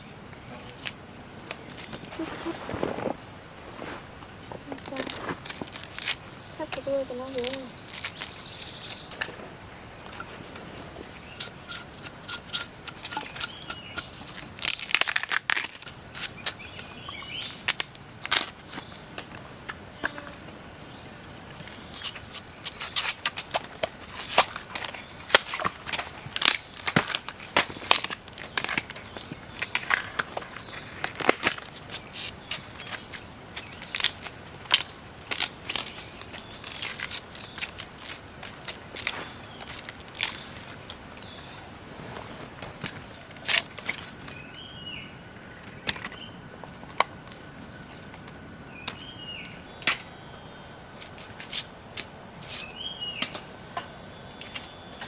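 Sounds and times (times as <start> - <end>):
crunching and crackling: 3.8 - 9.4, 10.1 - 19.4, 21.8 - 44.4.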